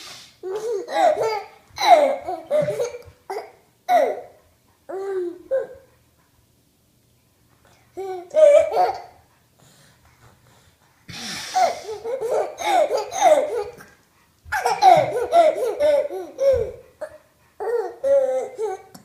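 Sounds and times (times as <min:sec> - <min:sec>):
toddler laughing: 0:00.4 - 0:04.3, 0:08.0 - 0:09.2, 0:11.6 - 0:13.9, 0:14.5 - 0:18.9.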